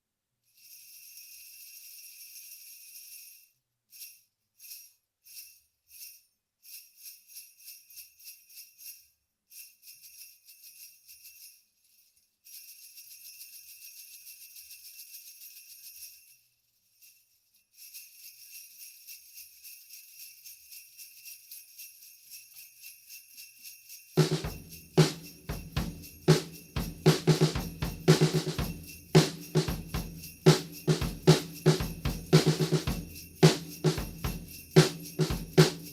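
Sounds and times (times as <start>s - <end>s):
sleigh bells jingling: 0.6s - 35.9s
rhythmic low thumps: 24.2s - 35.9s.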